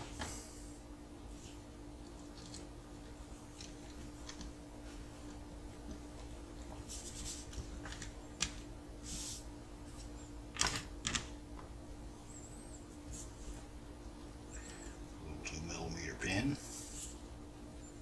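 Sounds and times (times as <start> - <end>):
faint steady hum: 0.0 - 18.0
small parts clicking and rustling: 2.0 - 2.7.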